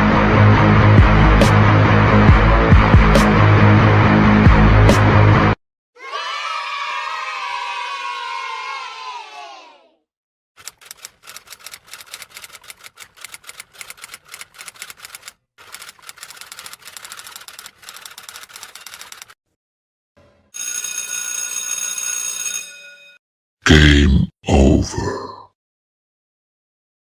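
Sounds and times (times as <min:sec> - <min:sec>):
bell-like ringing: 0:20.6 - 0:23.2.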